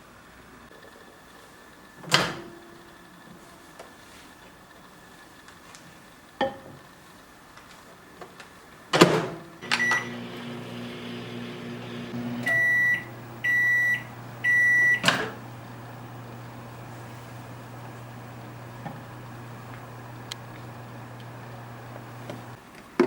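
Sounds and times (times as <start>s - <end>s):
microwave oven humming: 0.7s - 22.6s
long beeps: 9.6s - 10.3s, 12.4s - 15.1s
keypad beep: 9.7s - 10.1s, 12.4s - 15.1s.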